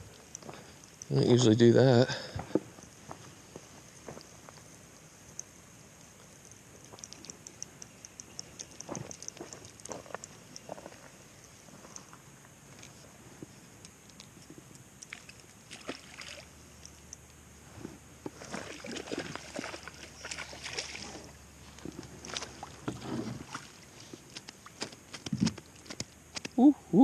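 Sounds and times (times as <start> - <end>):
water splashing and sloshing: 15.1 - 16.9, 18.3 - 26.0.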